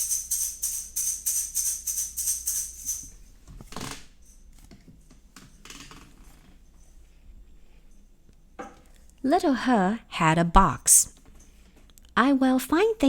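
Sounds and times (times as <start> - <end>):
jingling tambourine shakes: 0.0 - 3.3.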